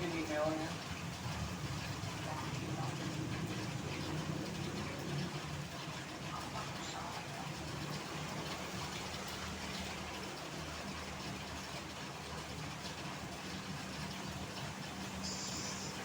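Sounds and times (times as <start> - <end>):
low engine hum: 0.0 - 16.0
road traffic: 0.0 - 16.0
heavy rain hissing: 13.7 - 16.0.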